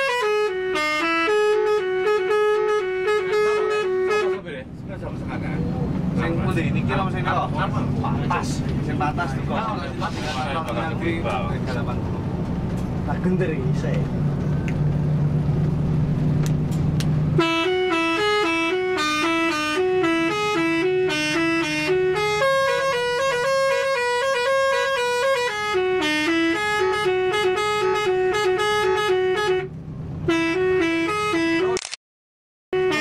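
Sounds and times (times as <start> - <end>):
air horns playing melody: 0.0 - 4.4, 17.4 - 29.7, 30.3 - 31.8, 32.7 - 33.0
bus engine and road noise: 0.0 - 32.0, 32.8 - 33.0.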